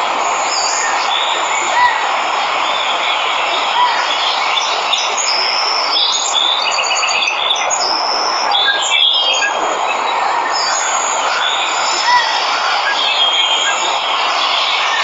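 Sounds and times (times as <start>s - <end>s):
waterfall rushing: 0.0s - 15.0s
birds chirping and trilling: 0.3s - 15.0s.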